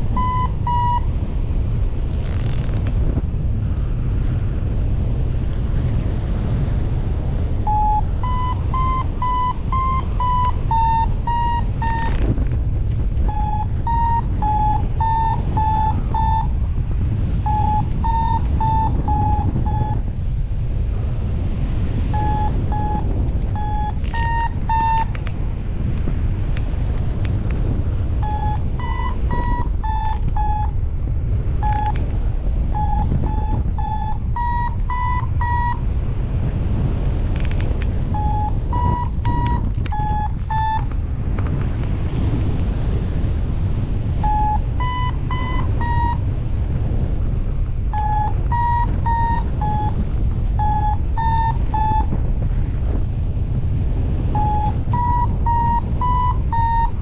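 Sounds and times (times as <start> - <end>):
variometer short quick beeps: 0.0 - 1.1, 7.7 - 12.5, 13.2 - 16.6, 17.4 - 20.0, 22.1 - 25.3, 28.2 - 30.8, 31.6 - 35.8, 38.1 - 40.9, 44.2 - 46.2, 47.9 - 50.0, 50.6 - 52.2, 54.4 - 57.0
wind rumbling on microphone: 0.0 - 57.0.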